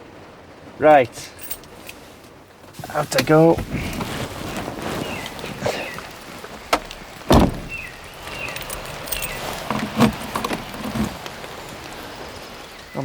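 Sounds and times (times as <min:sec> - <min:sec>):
steady rain: 0:00.0 - 0:13.0
car door latch click: 0:06.7 - 0:07.8
heavy car door thud: 0:06.7 - 0:08.0.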